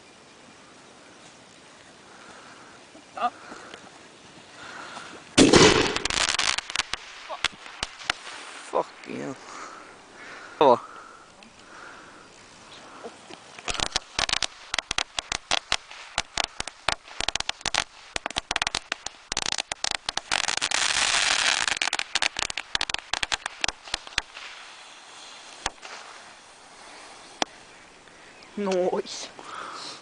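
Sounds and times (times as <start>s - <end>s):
firecrackers banging: 4.6s - 27.6s.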